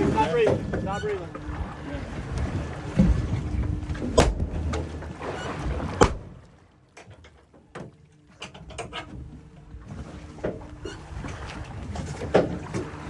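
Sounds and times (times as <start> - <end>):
steady rumble: 0.0 - 6.6
sharp knocks against a boat: 0.0 - 13.0.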